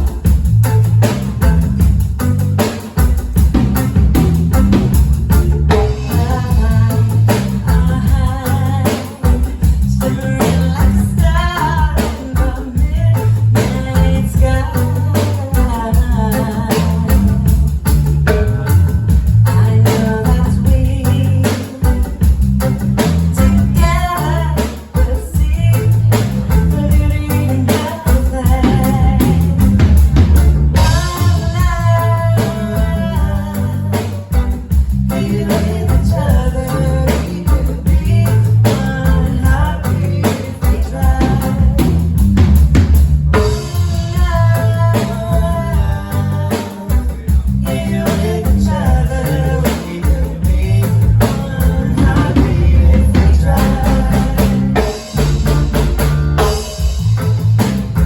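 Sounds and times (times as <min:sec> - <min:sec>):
live band playing: 0:00.0 - 0:58.0
person singing: 0:05.5 - 0:30.0, 0:30.7 - 0:42.2, 0:43.4 - 0:55.5.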